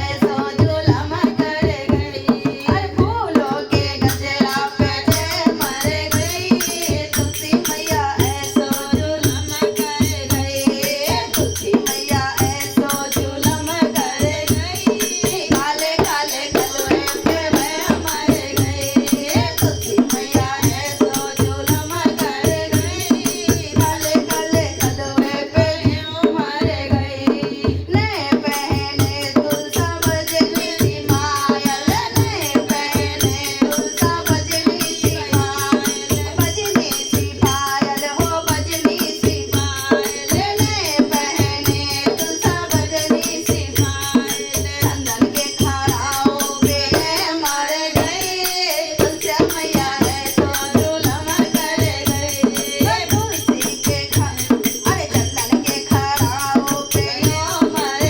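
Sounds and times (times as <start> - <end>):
hand drum beat: 0.0 - 58.0
jingling rattle percussion: 0.0 - 58.0
women singing devotional song: 0.0 - 58.0.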